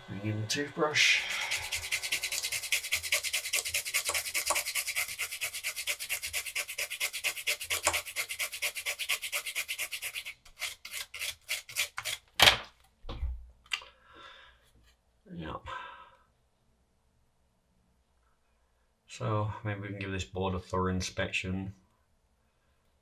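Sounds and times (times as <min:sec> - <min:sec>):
toothbrush scrubbing circuit board: 0:01.0 - 0:12.2.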